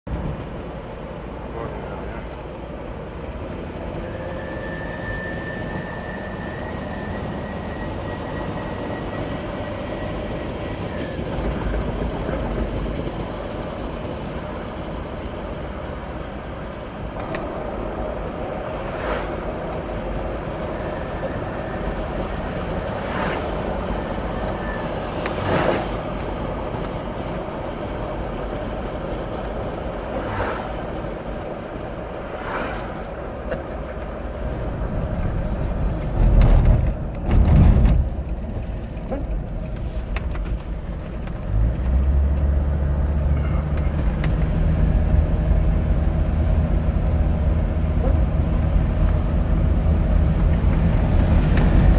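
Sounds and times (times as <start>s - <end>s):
diesel engine running: 0.1s - 51.9s
turbocharger whistle: 4.0s - 11.1s.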